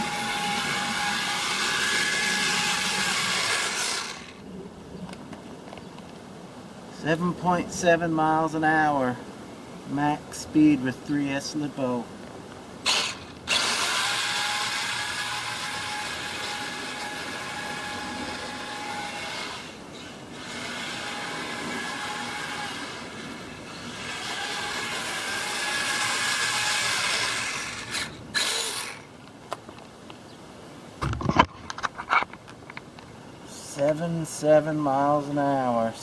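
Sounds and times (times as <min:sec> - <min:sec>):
high motor whine: 0:00.0 - 0:04.5, 0:12.8 - 0:29.1.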